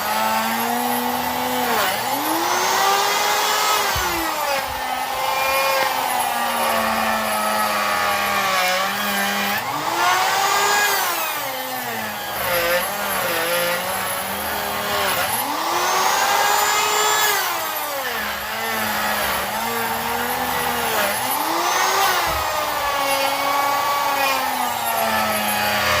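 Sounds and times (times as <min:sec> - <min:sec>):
power tool motor cutting wood: 0:00.0 - 0:26.0.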